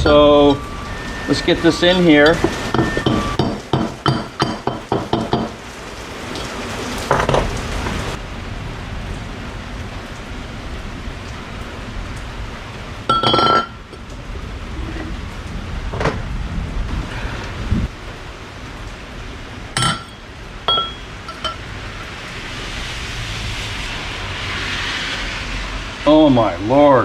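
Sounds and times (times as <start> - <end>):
loud ringing metal clank: 0.0 - 5.6, 13.1 - 14.1, 19.8 - 21.6
heavy rain: 0.0 - 27.0.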